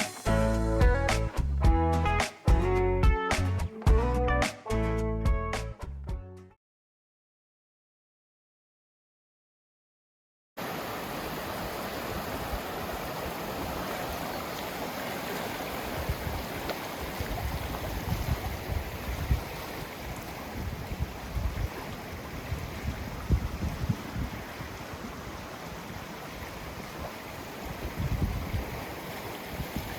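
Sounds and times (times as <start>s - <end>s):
running water rushing: 10.6s - 29.9s
wind buffeting microphone: 15.8s - 29.9s.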